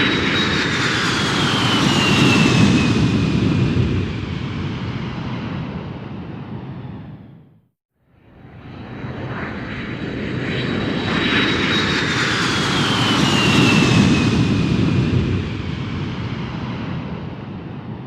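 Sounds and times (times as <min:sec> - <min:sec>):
airplane flying past: 0:00.0 - 0:07.5, 0:08.1 - 0:18.0.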